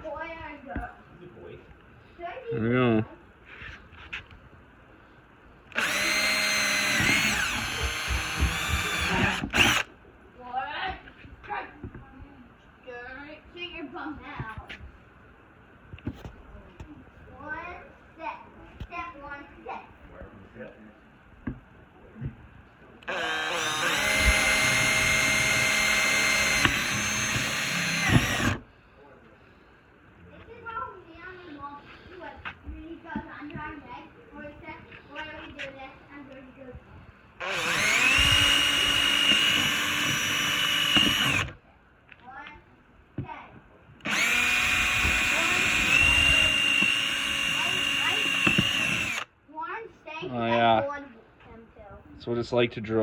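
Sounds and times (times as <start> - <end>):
power drill whining: 5.7 - 9.9, 23.0 - 28.7, 37.4 - 41.6, 44.0 - 49.3.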